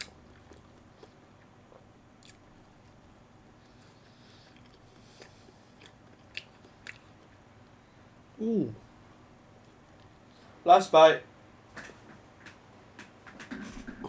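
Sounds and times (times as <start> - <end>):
faint chewing: 0.0 - 7.8
mouth clicks and smacks: 4.6 - 7.0.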